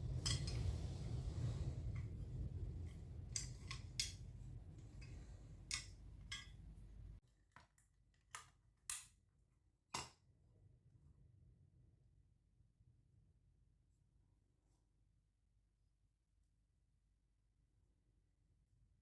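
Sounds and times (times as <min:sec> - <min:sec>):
steady low hum: 0:00.0 - 0:07.2.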